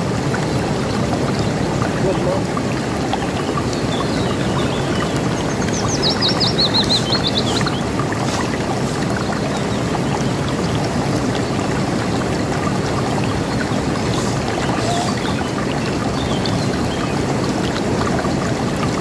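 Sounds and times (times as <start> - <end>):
river water rushing: 0.0 - 19.0
songbird chirping: 3.9 - 7.9.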